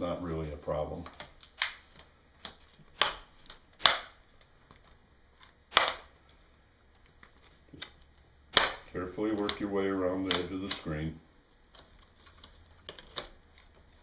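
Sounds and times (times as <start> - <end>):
plastic clips cracking loose: 1.0 - 6.1, 7.0 - 10.9, 11.7 - 14.0.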